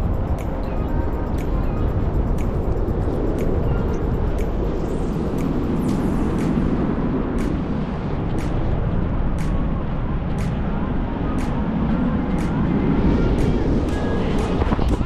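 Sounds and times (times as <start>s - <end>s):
wind rushing over microphone: 0.0s - 15.0s
faint sharp tick: 0.2s - 9.7s.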